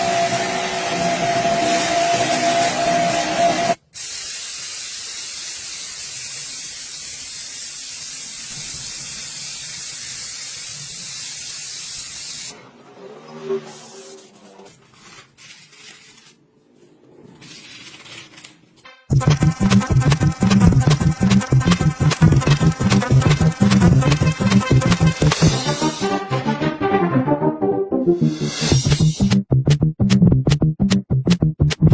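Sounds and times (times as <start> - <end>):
spray hissing: 1.7 - 12.6.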